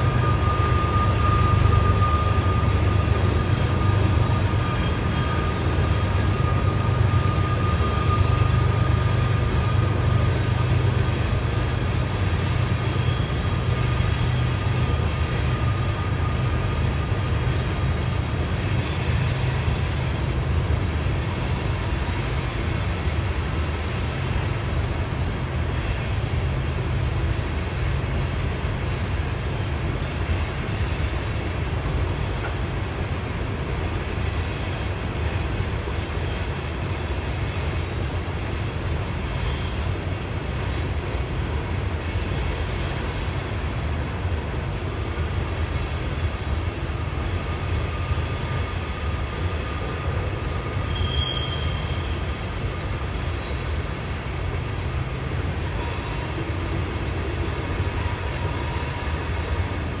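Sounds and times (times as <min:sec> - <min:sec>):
high-pitched squeal: 0:00.0 - 0:20.3, 0:47.0 - 0:53.8
train cars rolling on rails: 0:00.0 - 1:00.0.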